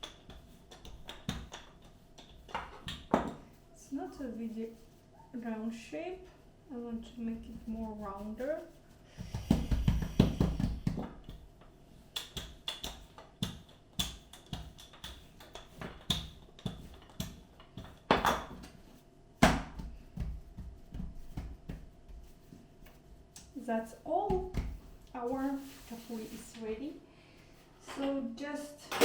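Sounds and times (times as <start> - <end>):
dough patted by hand: 0.0 - 3.6, 7.0 - 25.4.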